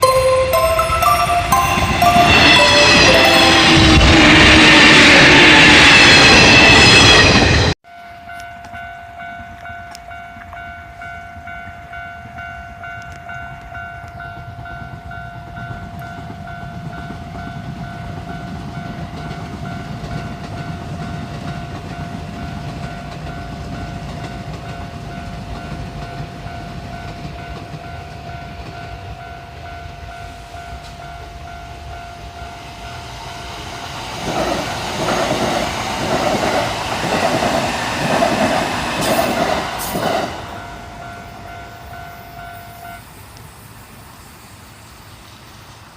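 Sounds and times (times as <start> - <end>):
music: 0.0 - 4.2
level crossing warning bell: 0.0 - 7.3, 7.9 - 34.9, 39.0 - 43.1
train rumbling: 0.0 - 45.9.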